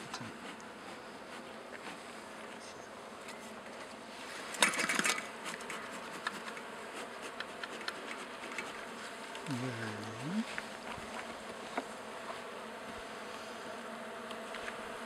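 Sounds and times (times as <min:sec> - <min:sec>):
honey bees buzzing: 0:00.0 - 0:15.0
clicking and hiss burst: 0:04.5 - 0:08.7.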